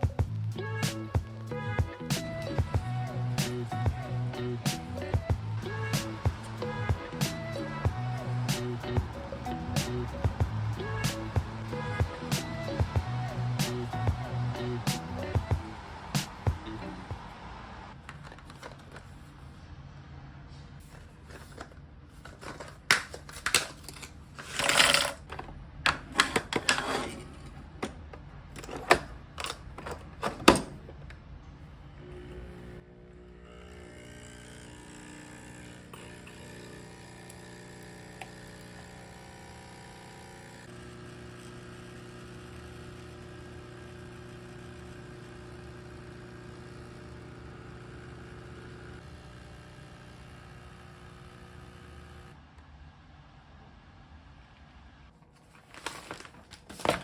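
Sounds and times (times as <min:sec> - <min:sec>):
soft background music: 0:00.0 - 0:15.8
clicks and knocks of handled objects: 0:18.1 - 0:19.2, 0:20.8 - 0:31.2.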